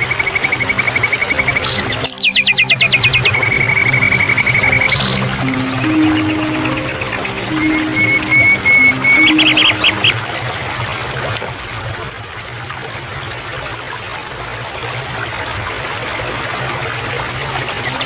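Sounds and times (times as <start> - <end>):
small stream trickling: 0.0 - 18.0
bird chirps: 0.5 - 10.2.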